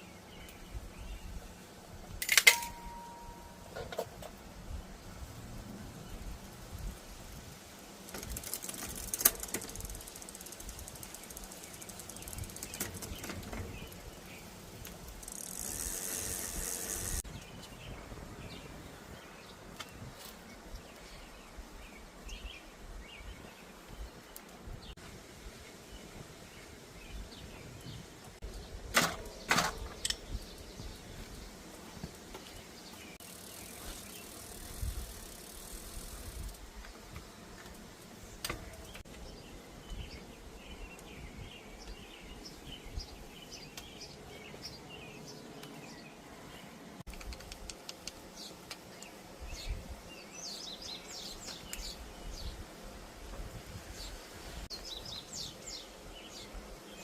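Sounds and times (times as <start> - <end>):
steady hiss: 4.4 - 17.3, 30.1 - 41.4.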